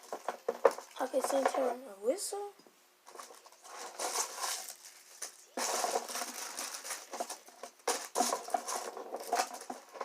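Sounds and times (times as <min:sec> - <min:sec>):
rustling of small items: 0:00.0 - 0:10.0.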